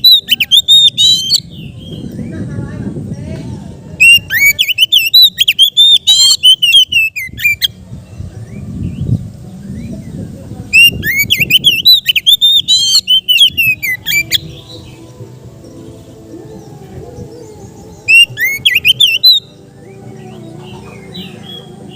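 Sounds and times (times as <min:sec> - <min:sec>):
bird singing whistled phrases: 0:00.0 - 0:02.3, 0:04.0 - 0:07.8, 0:10.7 - 0:14.5, 0:18.0 - 0:20.4.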